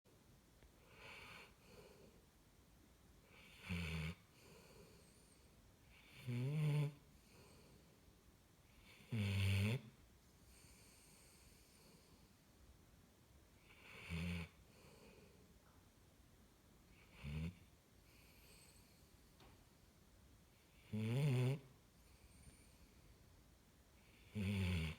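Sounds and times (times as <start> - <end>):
dog breathing softly: 4.3 - 6.0, 18.0 - 19.7, 21.9 - 23.3
dog snoring loudly: 5.9 - 7.6, 8.8 - 9.9, 17.0 - 18.8, 20.8 - 22.4, 24.1 - 24.9.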